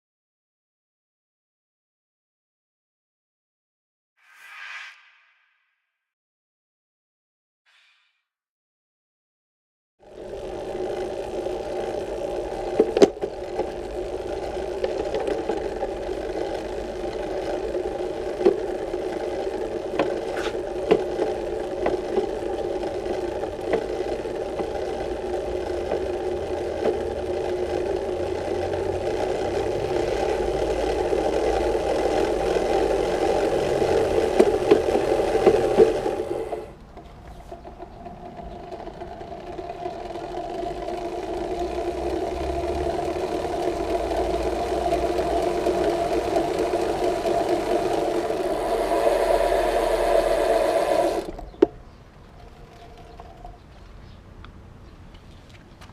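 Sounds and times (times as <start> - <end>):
bike chain whirring: 10.0 - 53.9
bike derailleur clicks: 10.0 - 55.7.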